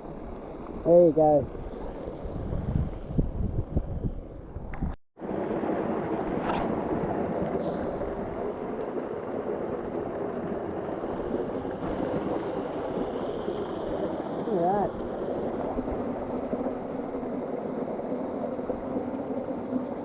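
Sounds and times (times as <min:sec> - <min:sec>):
wind on microphone: 0:01.3 - 0:05.0
creek water rushing: 0:05.3 - 0:20.0.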